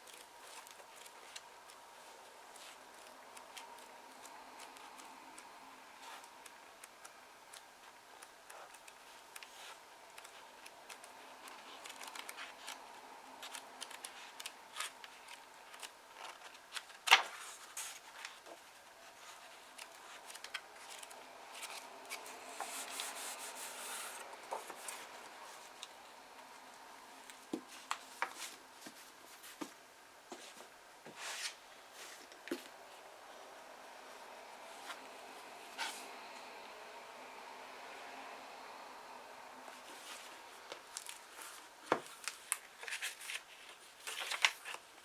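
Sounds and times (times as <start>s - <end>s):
paper pages rustling and turning: 0.0s - 29.8s, 39.0s - 45.0s.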